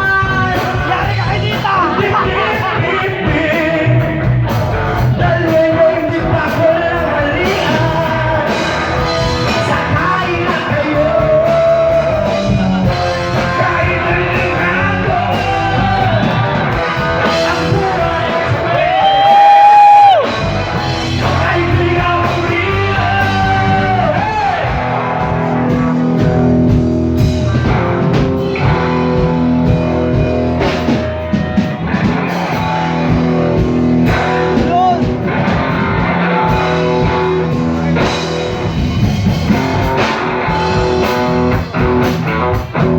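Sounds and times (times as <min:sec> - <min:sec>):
person singing: 0:00.0 - 0:26.4
rock band playing: 0:00.0 - 0:42.9.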